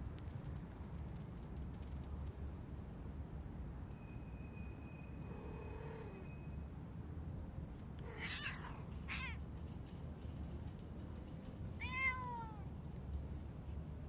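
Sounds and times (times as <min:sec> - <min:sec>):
cat meowing: 0:08.0 - 0:09.4, 0:11.8 - 0:12.7.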